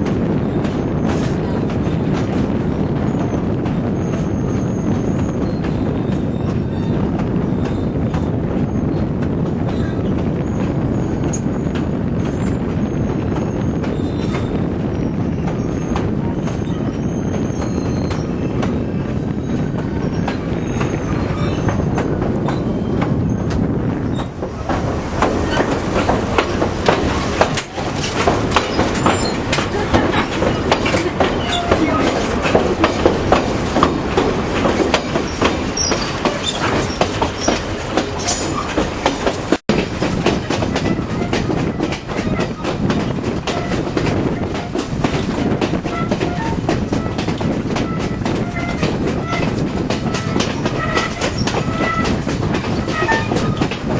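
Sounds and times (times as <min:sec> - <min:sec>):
train rumbling on track: 0:00.0 - 0:53.9
wheels clacking over rail joints: 0:15.3 - 0:53.9.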